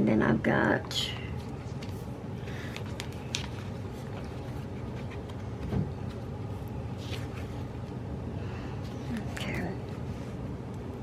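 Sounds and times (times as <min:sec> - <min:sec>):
steady low hum: 0:00.0 - 0:11.0
paper sheets rustling: 0:01.4 - 0:08.0.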